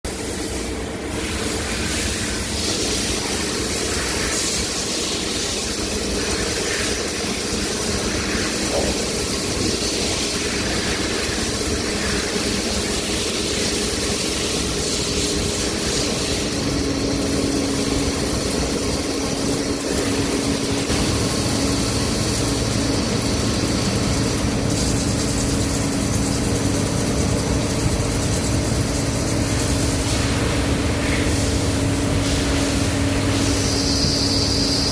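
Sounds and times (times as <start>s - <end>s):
lathe machine hum with hiss: 0.1s - 34.9s.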